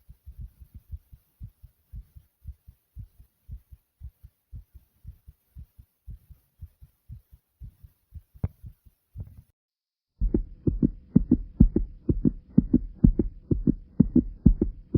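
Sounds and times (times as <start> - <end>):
pounding heartbeat: 0.1 - 9.4, 10.2 - 14.9
faint steady hum: 10.2 - 14.9.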